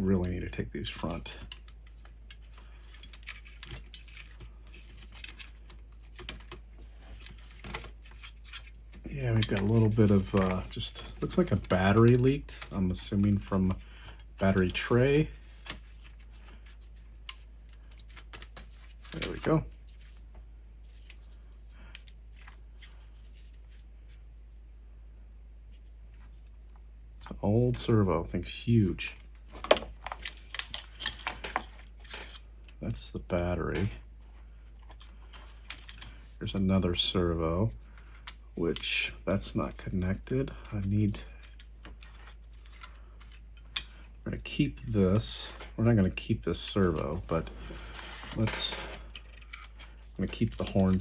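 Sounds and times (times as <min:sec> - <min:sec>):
small plastic and metal parts clicking: 0:00.2 - 0:20.2, 0:29.5 - 0:32.8, 0:34.8 - 0:36.3, 0:40.6 - 0:44.1, 0:46.8 - 0:51.0.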